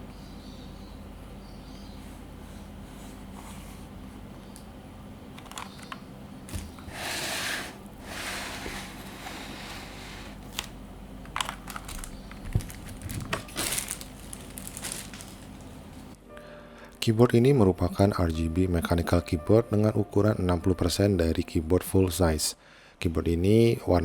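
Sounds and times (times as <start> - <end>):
packaging crinkling: 10.5 - 16.2.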